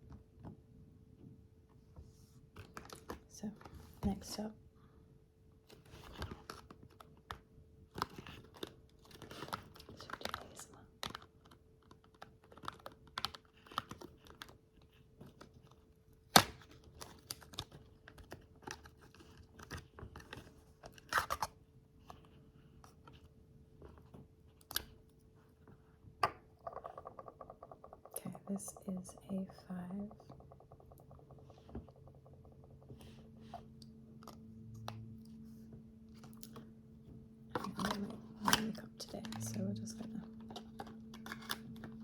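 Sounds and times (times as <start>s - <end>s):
faint steady hum: 13.1s - 42.0s
packaging clicks: 37.5s - 42.0s.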